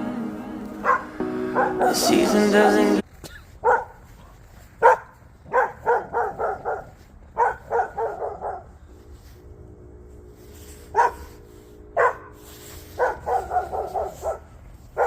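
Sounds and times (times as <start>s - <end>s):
dog barking: 0.8s - 2.9s, 3.6s - 8.8s, 10.9s - 11.4s, 12.0s - 15.0s.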